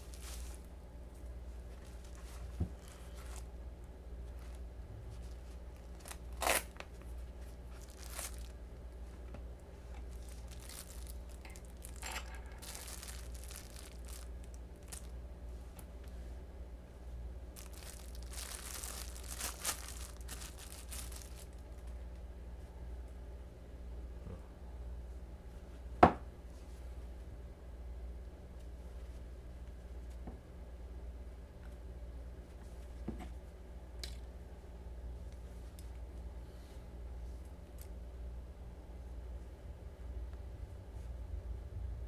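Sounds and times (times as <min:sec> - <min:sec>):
packaging tearing and crinkling: 0:00.0 - 0:00.7, 0:05.3 - 0:07.0, 0:07.8 - 0:08.6, 0:10.1 - 0:15.1, 0:17.6 - 0:21.8
steady low hum: 0:00.0 - 0:42.0.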